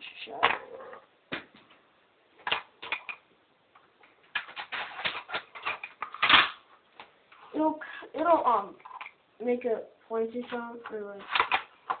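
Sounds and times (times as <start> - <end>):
plastic toy blaster clicks and rattles: 10.4 - 12.0.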